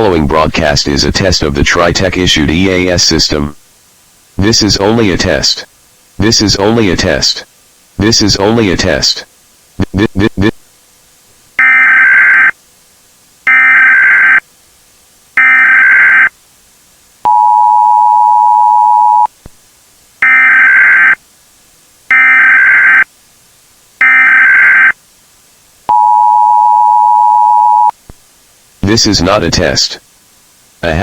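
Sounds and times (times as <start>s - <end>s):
data burst tones: 11.6s - 12.6s, 13.5s - 14.4s, 15.4s - 16.3s, 20.2s - 21.2s, 22.1s - 23.1s, 24.0s - 25.0s
two-tone attention signal: 17.3s - 19.3s, 24.0s - 24.9s, 25.9s - 27.9s.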